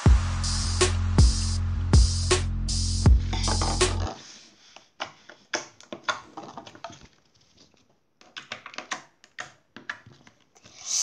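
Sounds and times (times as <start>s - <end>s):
intro music with drum beat: 0.0s - 4.1s.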